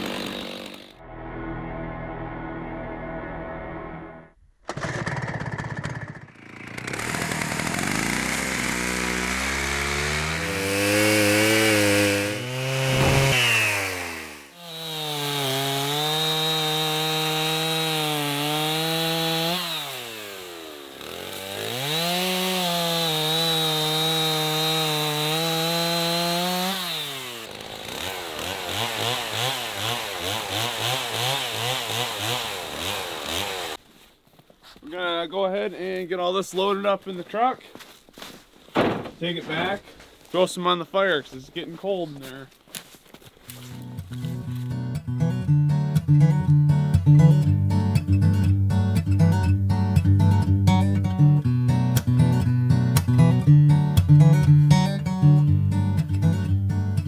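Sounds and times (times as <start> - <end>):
chainsaw cutting wood: 0.0 - 1.0, 4.7 - 33.9, 42.6 - 44.8.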